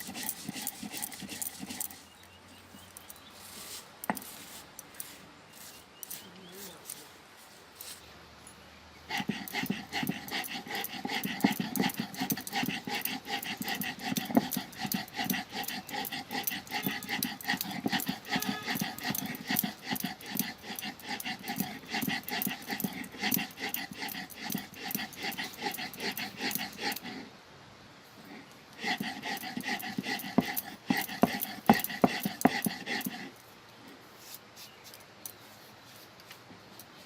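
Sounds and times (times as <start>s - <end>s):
stone grinding on stone slab: 0.0s - 2.1s, 9.1s - 27.2s, 28.8s - 33.4s.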